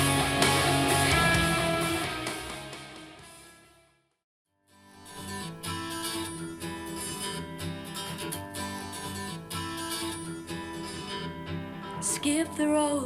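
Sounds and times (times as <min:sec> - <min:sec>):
strummed acoustic guitar: 0:00.0 - 0:03.4, 0:04.7 - 0:13.0.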